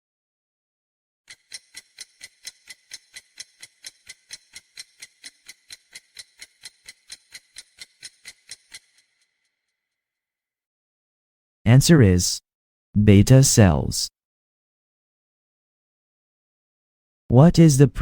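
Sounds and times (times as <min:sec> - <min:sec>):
clock ticking: 0:01.3 - 0:09.1.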